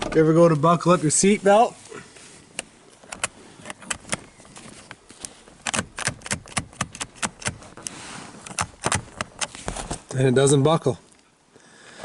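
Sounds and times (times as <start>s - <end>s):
seatbelt buckle clicking: 5.6s - 7.6s.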